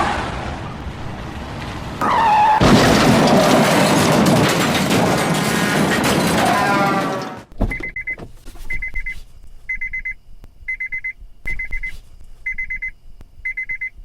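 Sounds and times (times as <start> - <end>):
electronic alarm beeping: 7.6 - 14.0.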